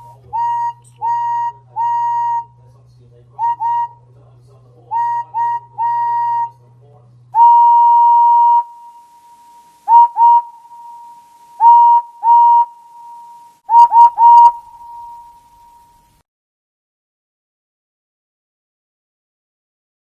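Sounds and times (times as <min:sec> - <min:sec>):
steam engine whistle toots: 0:00.0 - 0:02.6, 0:03.4 - 0:04.1, 0:04.9 - 0:06.6, 0:07.4 - 0:16.2.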